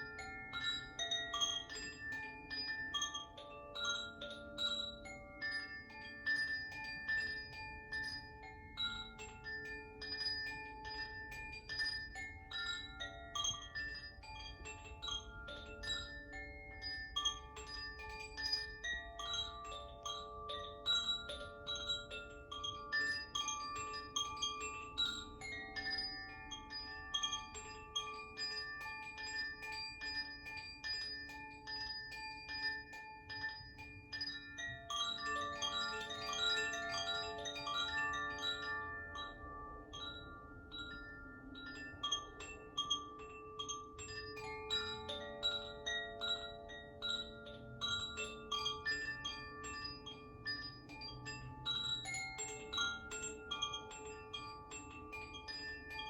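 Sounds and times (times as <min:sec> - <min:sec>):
tuned chimes melody: 0:25.0 - 0:56.0.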